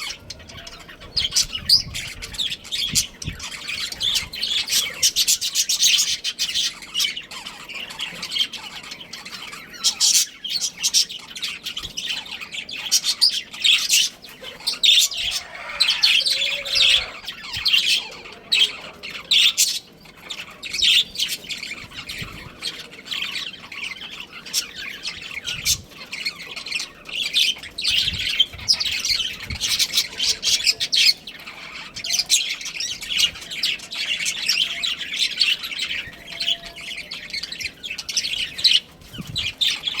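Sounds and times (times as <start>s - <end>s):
budgerigars chattering and chirping: 0.0s - 40.0s
harsh bird squawks: 14.5s - 19.6s.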